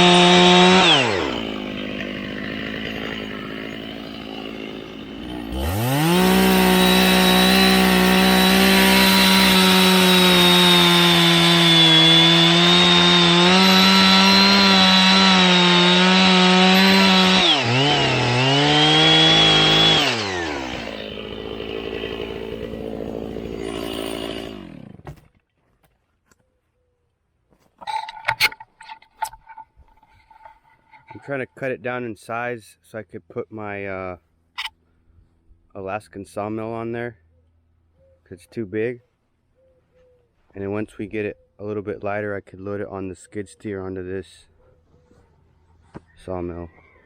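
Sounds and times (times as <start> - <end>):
chainsaw cutting log: 0.0 - 25.4, 27.8 - 31.3.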